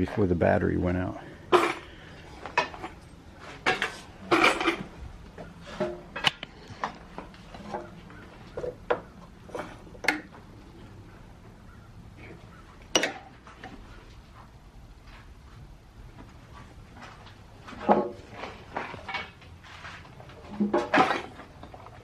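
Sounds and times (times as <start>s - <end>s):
dishes clattering: 1.5s - 7.0s, 12.9s - 13.4s, 20.5s - 22.0s.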